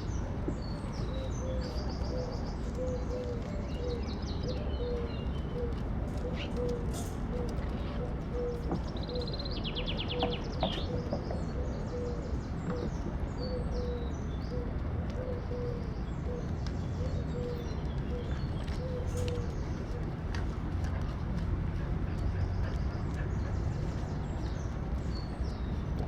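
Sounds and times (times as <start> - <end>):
birds singing: 0.0 - 26.0
dove cooing: 0.9 - 20.2.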